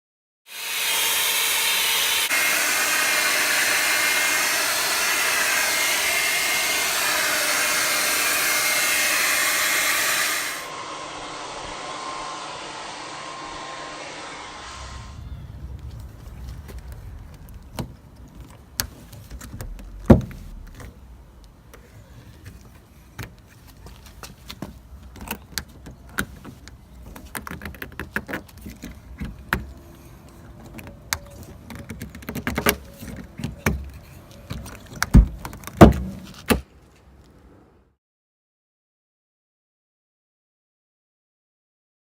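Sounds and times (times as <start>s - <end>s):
loud thump: 14.4s - 21.4s, 35.2s - 36.3s.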